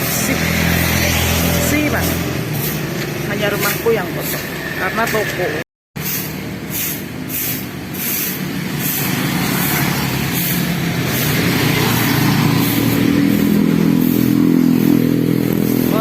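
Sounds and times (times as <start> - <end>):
motorcycle engine running: 9.6 - 16.0.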